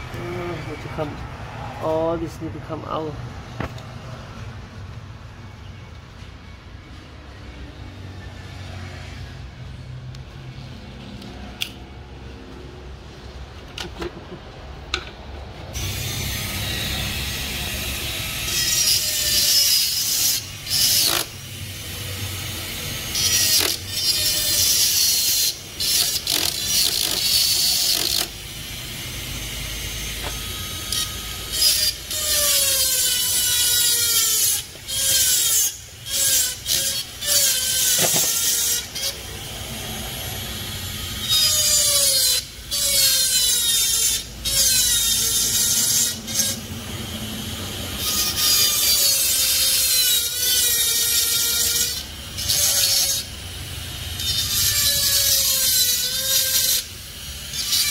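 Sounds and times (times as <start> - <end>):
tool scraping on metal: 15.7 - 22.4, 23.0 - 28.8, 29.5 - 39.4, 40.9 - 46.7, 48.0 - 53.3, 54.2 - 57.9
ratcheting: 23.2 - 28.4.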